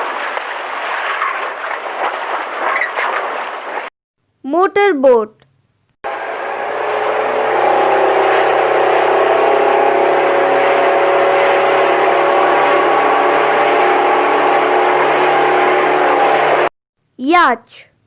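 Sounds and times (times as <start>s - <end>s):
motorboat engine droning: 6.1s - 16.7s.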